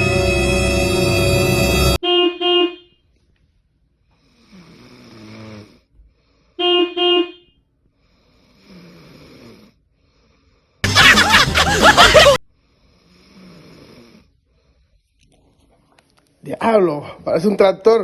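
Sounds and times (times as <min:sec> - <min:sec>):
short loud horn toots: 0:00.0 - 0:03.0
person snoring: 0:04.1 - 0:06.6, 0:08.0 - 0:10.9, 0:12.6 - 0:14.7.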